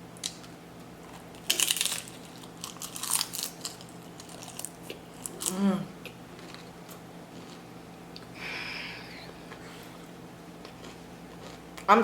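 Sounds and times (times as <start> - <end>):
chips crunching being chewed: 0.2 - 8.3, 10.6 - 11.9.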